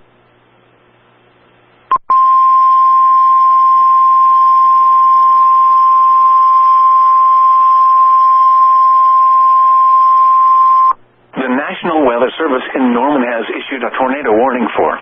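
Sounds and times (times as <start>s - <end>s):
faint radio hiss: 0.0s - 1.9s, 11.0s - 15.0s.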